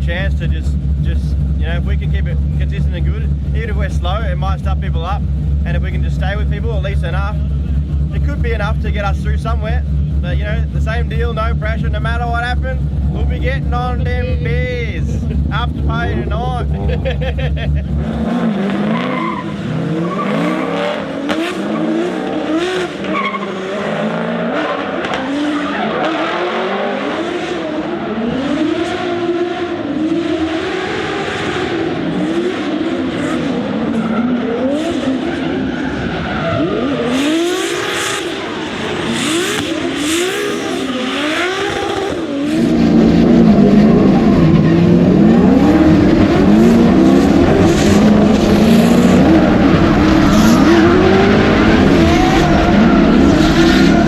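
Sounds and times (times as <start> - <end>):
car engine revving hard: 0.0 - 54.0
tyres squealing and skidding: 11.8 - 29.4, 30.2 - 54.0.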